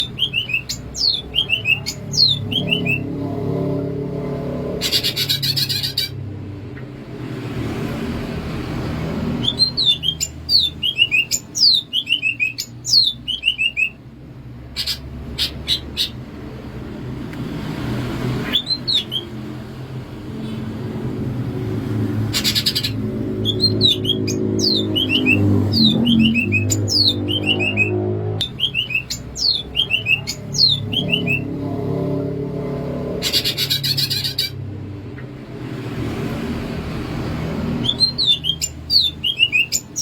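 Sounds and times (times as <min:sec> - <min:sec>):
bird whistling descending notes: 0:23.4 - 0:31.5.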